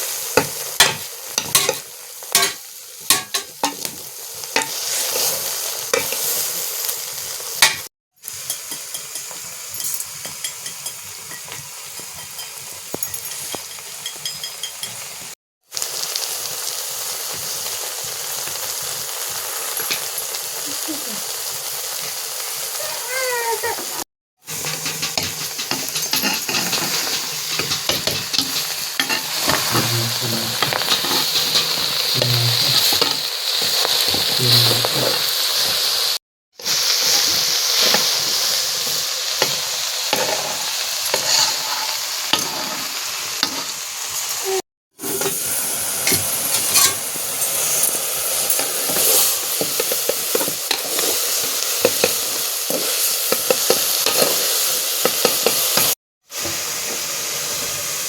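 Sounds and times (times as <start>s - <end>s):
food sizzling in a pan: 0.0s - 58.0s
spoon scraping a pan: 0.4s - 4.0s, 4.6s - 6.5s, 8.4s - 15.1s, 24.5s - 35.8s, 37.8s - 44.3s, 46.0s - 55.9s.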